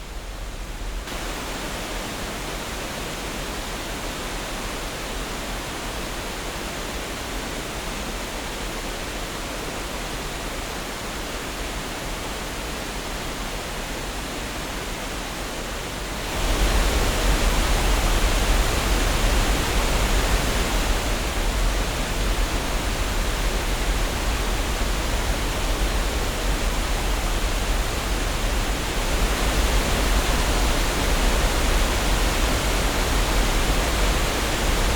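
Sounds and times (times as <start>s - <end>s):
waterfall rushing: 1.1s - 3.4s, 15.9s - 34.9s.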